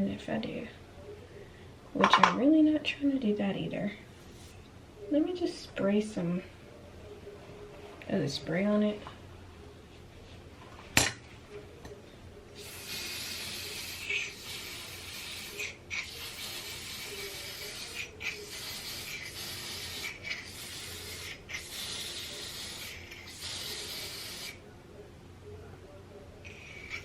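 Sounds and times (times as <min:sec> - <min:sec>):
aerosol spray hissing: 0:12.6 - 0:24.6.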